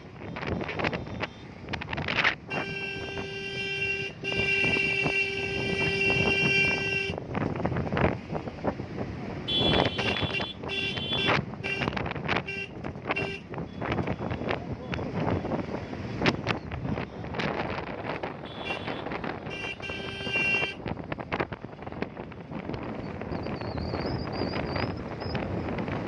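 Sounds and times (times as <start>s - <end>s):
traffic noise: 0.0s - 26.0s
vehicle horns honking: 2.4s - 7.2s, 9.5s - 14.4s, 18.1s - 20.9s.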